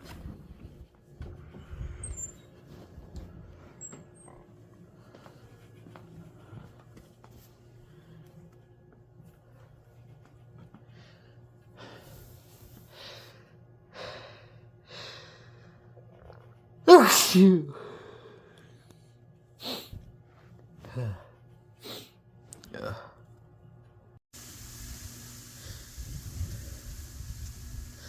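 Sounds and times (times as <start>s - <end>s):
person sneezing: 16.9s - 17.9s.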